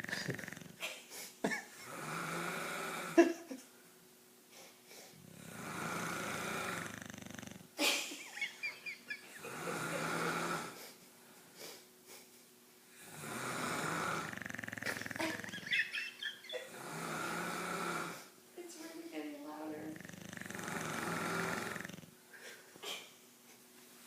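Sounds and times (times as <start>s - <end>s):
person snoring: 0.0s - 0.8s, 1.8s - 3.3s, 5.2s - 7.6s, 9.3s - 11.0s, 13.0s - 15.8s, 16.6s - 18.3s, 19.8s - 22.1s.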